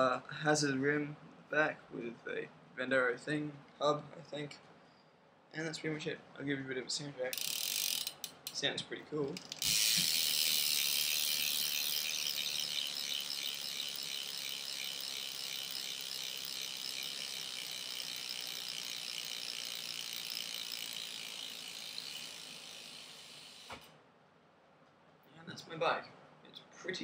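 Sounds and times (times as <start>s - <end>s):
bicycle freewheel ticking: 7.3s - 8.6s, 9.4s - 23.9s.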